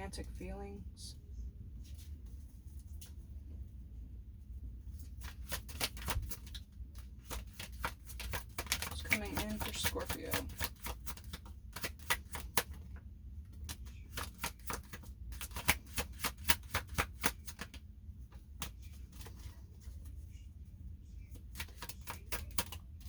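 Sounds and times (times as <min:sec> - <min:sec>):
cards being shuffled: 0:05.0 - 0:20.2, 0:21.2 - 0:23.0.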